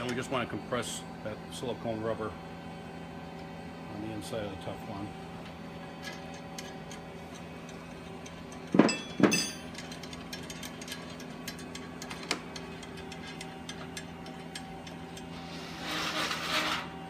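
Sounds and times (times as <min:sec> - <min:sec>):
room hum: 0:00.0 - 0:17.0
hand tools clicking and ticking: 0:06.5 - 0:15.3.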